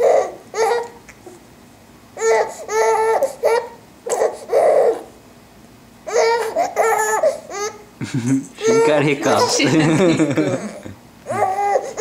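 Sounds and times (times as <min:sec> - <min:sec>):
baby laughing and babbling: 0:00.0 - 0:01.0, 0:02.2 - 0:05.1, 0:06.1 - 0:07.9, 0:08.6 - 0:12.0.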